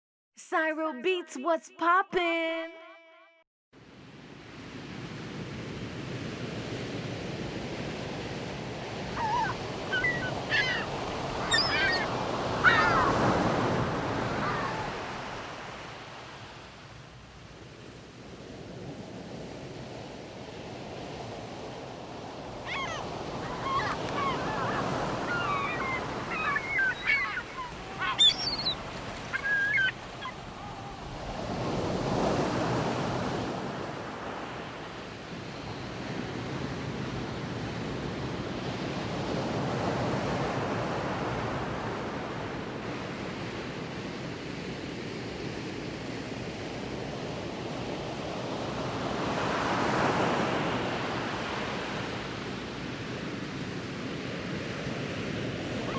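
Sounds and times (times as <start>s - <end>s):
ocean surf washing ashore: 3.8s - 55.9s
birds calling: 9.0s - 15.4s, 22.4s - 31.7s, 55.7s - 55.9s.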